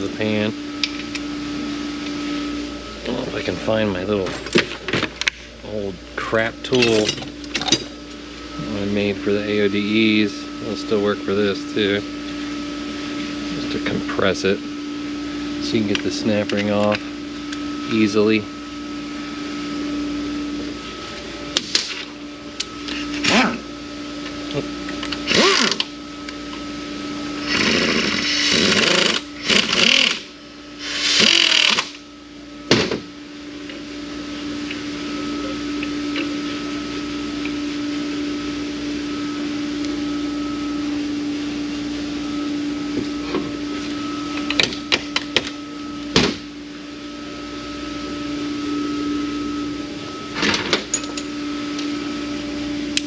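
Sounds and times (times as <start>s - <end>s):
steady hum: 0.0s - 53.0s
metal tools clinking: 6.7s - 7.9s, 50.9s - 51.3s.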